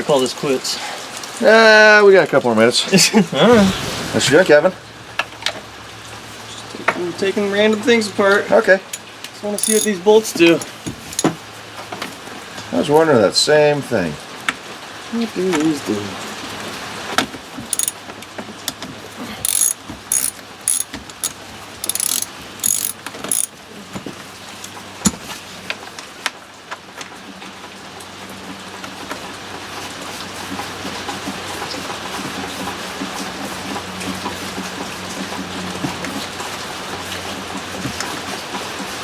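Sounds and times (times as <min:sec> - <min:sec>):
ratchet wrench clicking: 0:09.6 - 0:10.0, 0:10.6 - 0:11.3, 0:17.7 - 0:18.0, 0:19.5 - 0:23.5.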